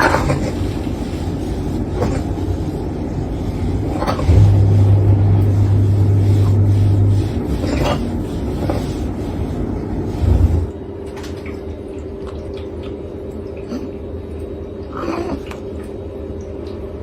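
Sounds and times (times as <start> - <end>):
animal lapping water: 0.0 - 17.0
steady background hum: 0.0 - 17.0
low rumble with a thump: 4.0 - 7.9, 10.1 - 10.8.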